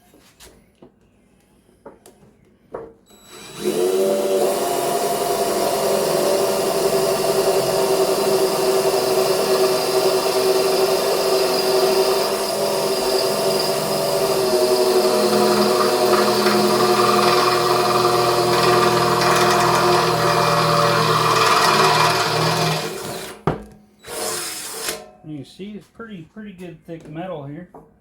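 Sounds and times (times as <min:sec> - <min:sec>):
electric drill boring through steel: 0:03.1 - 0:23.4, 0:24.0 - 0:25.0.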